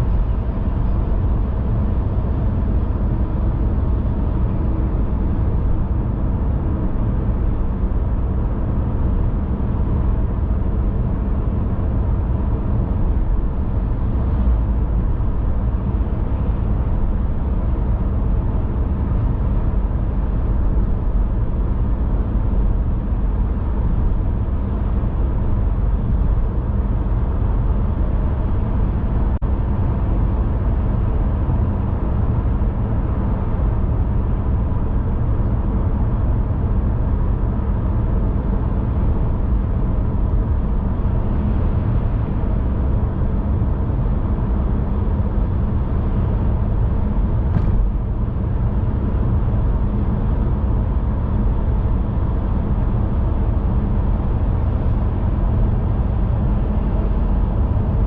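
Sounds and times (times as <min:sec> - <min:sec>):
car road and engine rumble: 0:00.0 - 0:58.0.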